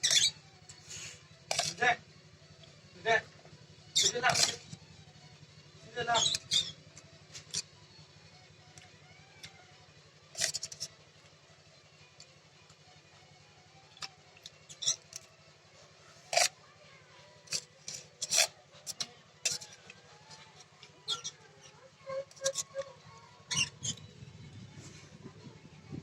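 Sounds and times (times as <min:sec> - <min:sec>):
utensils clinking against dishes: 0:00.9 - 0:01.8, 0:04.0 - 0:04.7, 0:10.4 - 0:10.9, 0:16.3 - 0:16.5, 0:17.5 - 0:20.5, 0:22.2 - 0:22.8.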